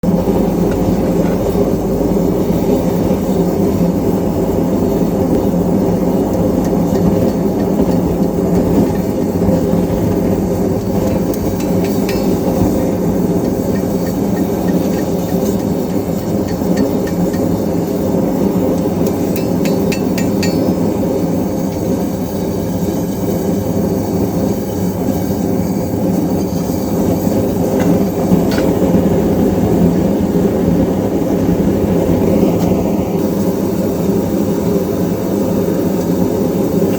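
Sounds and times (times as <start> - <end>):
light metal clinks: 19.1 - 21.0.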